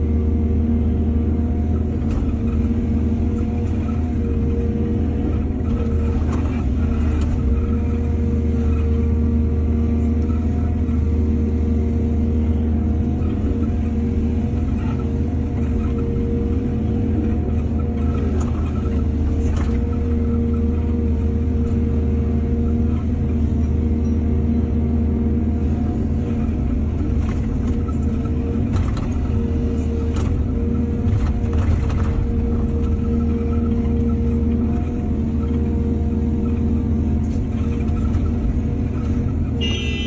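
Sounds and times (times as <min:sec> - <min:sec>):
excavator diesel engine running: 0:00.0 - 0:40.0.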